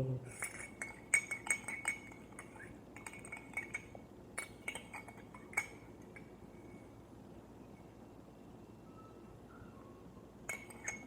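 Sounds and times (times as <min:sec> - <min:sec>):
spoon clinking against glass: 0:00.3 - 0:06.4, 0:10.4 - 0:11.0.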